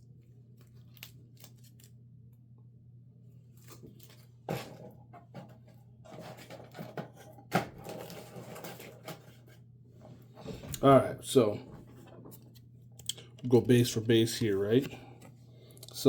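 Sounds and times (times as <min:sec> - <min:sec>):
low steady hum: 0:00.0 - 0:16.0
cards rustling: 0:00.5 - 0:02.0, 0:13.4 - 0:15.3.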